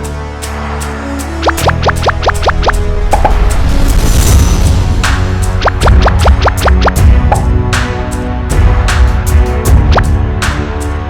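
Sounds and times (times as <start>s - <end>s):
electronic music with heavy beat: 1.4s - 3.7s, 5.3s - 10.7s.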